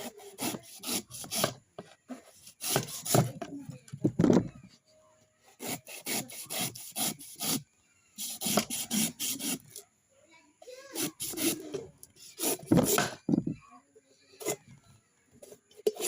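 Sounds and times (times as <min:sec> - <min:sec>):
coconut being scraped by hand: 0:00.0 - 0:01.6, 0:02.2 - 0:03.4, 0:05.5 - 0:07.6, 0:08.2 - 0:09.8, 0:10.9 - 0:13.2, 0:15.5 - 0:16.0.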